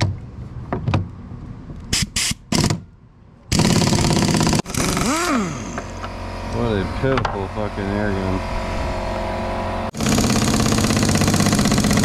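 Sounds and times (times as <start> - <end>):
pneumatic impact wrench hammering: 1.9 - 2.8, 3.5 - 6.2, 9.9 - 12.0.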